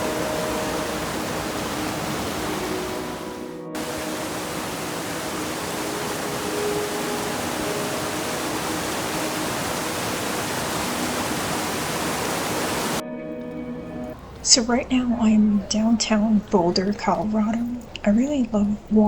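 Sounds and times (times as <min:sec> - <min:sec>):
river water rushing: 0:00.0 - 0:13.0.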